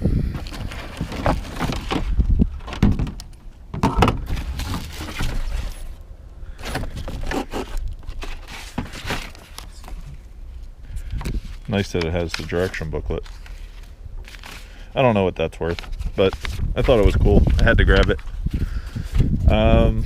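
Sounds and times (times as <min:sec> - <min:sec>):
wind rumble on microphone: 0:00.0 - 0:03.2, 0:10.8 - 0:11.8, 0:15.9 - 0:20.0
paper rustling: 0:00.3 - 0:02.8, 0:04.2 - 0:10.3, 0:11.0 - 0:19.8
cardboard box handling knocks: 0:01.2 - 0:04.3.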